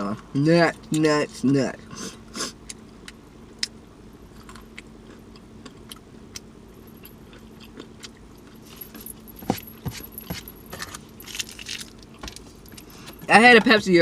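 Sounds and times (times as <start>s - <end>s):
steady low hum: 0.0s - 14.0s
chewing peanuts crunches: 2.7s - 9.4s, 10.3s - 13.0s.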